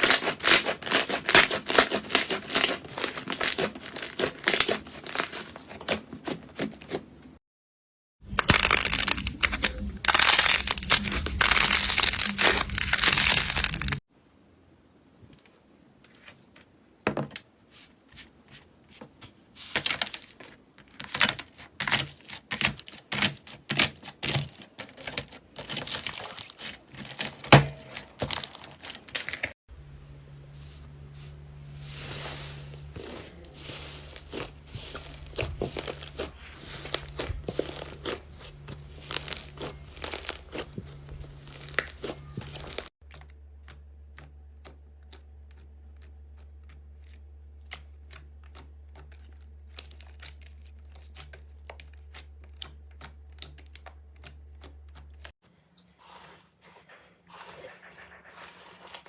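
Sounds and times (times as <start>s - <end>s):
slime crackling and popping: 8.4s - 14.0s, 33.0s - 43.3s
steady low hum: 29.7s - 47.5s.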